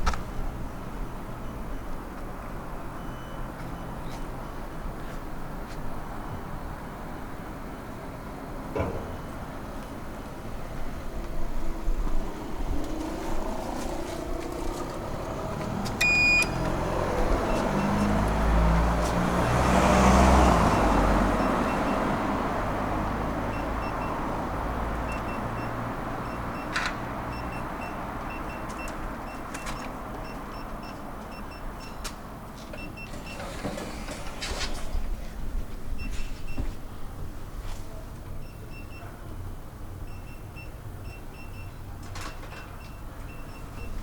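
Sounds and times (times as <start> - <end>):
elevator electronic beep: 2.9 - 4.1, 9.0 - 9.5, 15.2 - 18.3, 23.5 - 24.2, 25.1 - 32.0, 32.8 - 33.6, 40.1 - 41.8, 42.8 - 44.0
elevator hum and rumble: 7.6 - 26.6.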